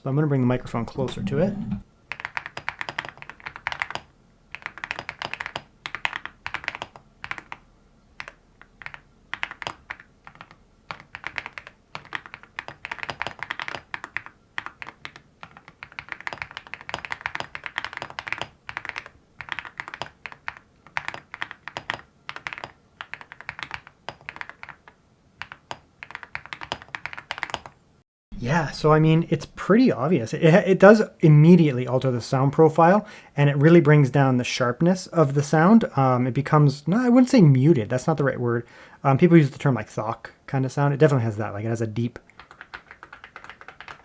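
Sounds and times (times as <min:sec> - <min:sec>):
mechanical keyboard typing: 0:00.6 - 0:07.6, 0:08.2 - 0:27.8, 0:42.3 - 0:44.0.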